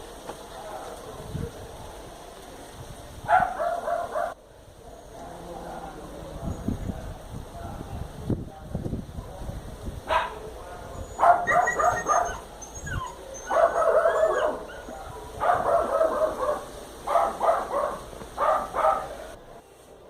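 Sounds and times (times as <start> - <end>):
dog whining: 11.0 - 15.1
small dog yapping: 11.0 - 19.1.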